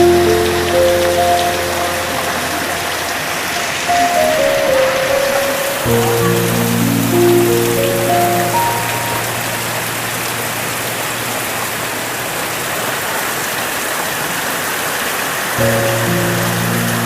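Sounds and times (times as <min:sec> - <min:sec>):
music with long held notes: 0:00.0 - 0:11.5, 0:15.6 - 0:17.0
heavy rain pouring: 0:00.0 - 0:17.0.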